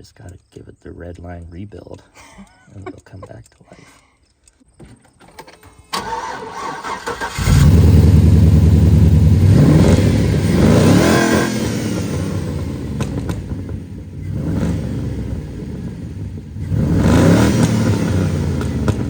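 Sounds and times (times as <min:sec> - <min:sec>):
engine starter cranking: 0:04.9 - 0:08.6
car engine running and revving: 0:07.3 - 0:19.0.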